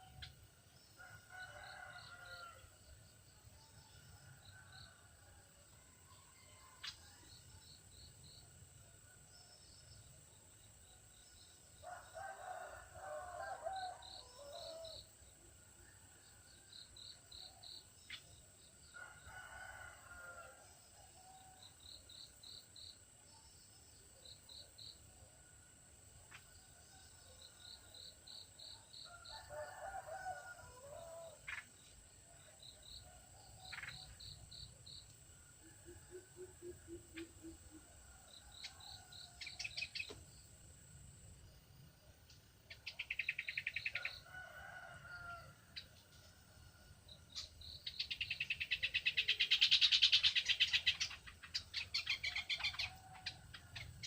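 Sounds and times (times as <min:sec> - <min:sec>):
rooster crowing faintly: 0:28.8 - 0:31.6.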